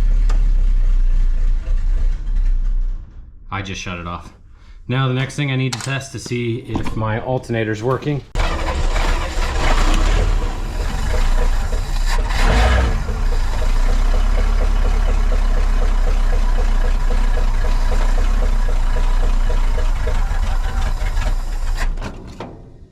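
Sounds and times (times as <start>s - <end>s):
bus engine idling: 8.4s - 21.8s.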